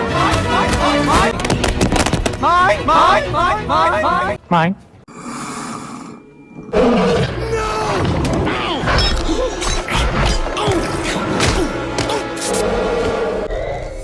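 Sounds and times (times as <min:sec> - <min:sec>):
orchestral action music: 0:00.0 - 0:04.4.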